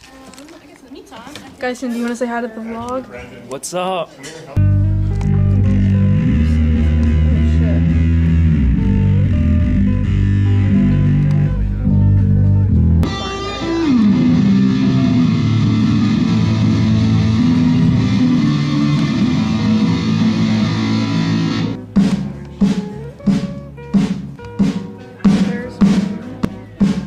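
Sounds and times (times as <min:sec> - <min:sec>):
electric guitar and bass chords: 0:04.6 - 0:27.0
drum struck steadily: 0:13.0 - 0:27.0.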